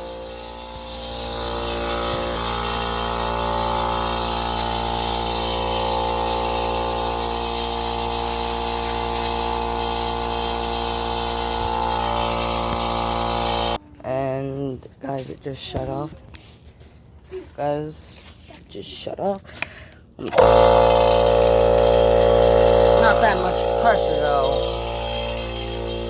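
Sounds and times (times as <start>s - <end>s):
air compressor running: 0.0s - 13.8s, 20.3s - 26.0s.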